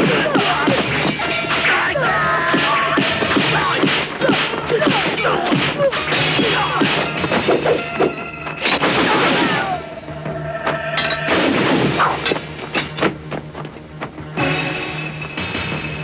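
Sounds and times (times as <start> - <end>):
background music: 0.0 - 16.0
punches and kicks: 2.5 - 7.8.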